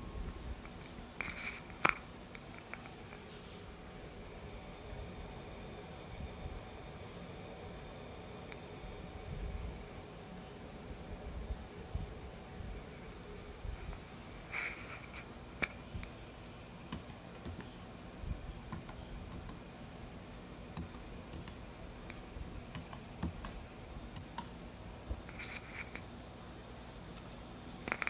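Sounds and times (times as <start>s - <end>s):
keyboard keys clicking: 16.9s - 17.8s, 18.7s - 19.6s, 20.7s - 21.6s, 22.7s - 24.5s.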